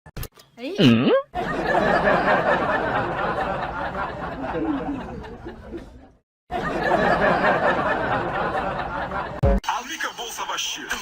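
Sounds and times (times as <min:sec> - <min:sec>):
people chattering and laughing: 0:01.4 - 0:09.4.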